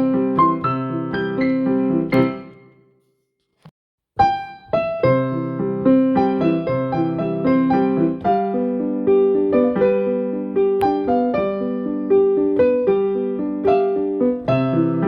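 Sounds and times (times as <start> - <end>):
solo piano music: 0.0 - 2.9, 4.2 - 15.0.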